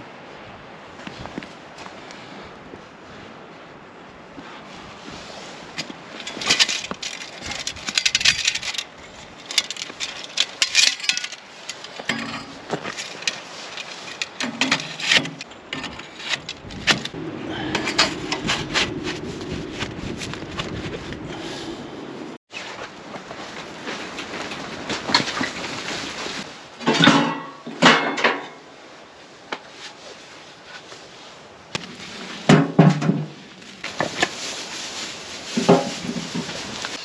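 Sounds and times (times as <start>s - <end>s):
objects clinking and rattling: 6.2s - 17.2s.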